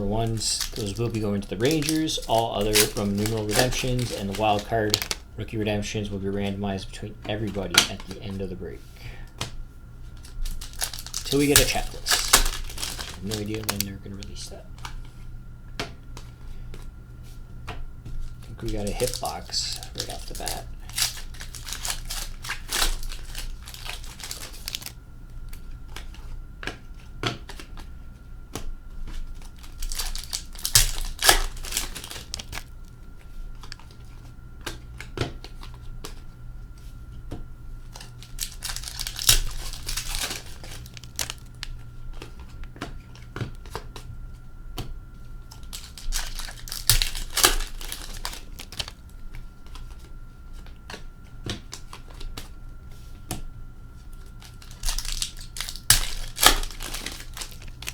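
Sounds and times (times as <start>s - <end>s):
wrappers tearing and crinkling: 0.0s - 5.3s, 10.0s - 15.0s, 18.2s - 25.6s, 29.1s - 32.9s, 37.9s - 41.8s, 45.5s - 50.0s, 54.1s - 57.9s.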